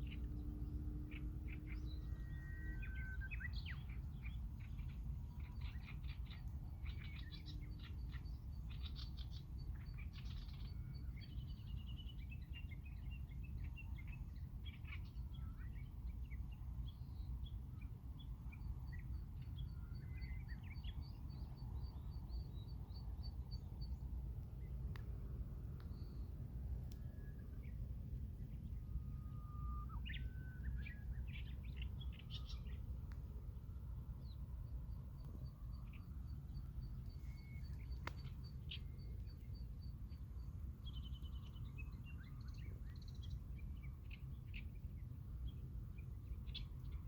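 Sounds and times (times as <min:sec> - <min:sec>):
low background rumble: 0:00.0 - 0:47.0
small birds singing: 0:00.0 - 0:47.0
long held bird whistle: 0:01.7 - 0:03.8, 0:28.6 - 0:32.6.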